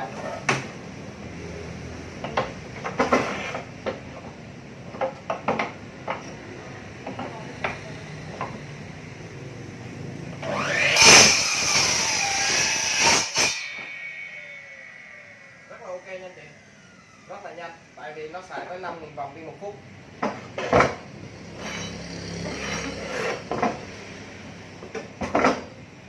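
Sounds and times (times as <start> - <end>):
electric saw motor whine: 10.3 - 18.4.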